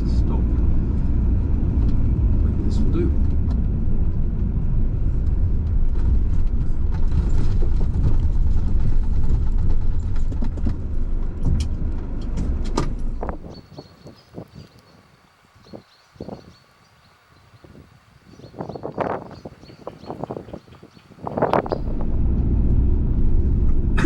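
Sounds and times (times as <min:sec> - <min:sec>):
van engine and tyres rumbling: 0:00.0 - 0:13.6, 0:21.2 - 0:24.0.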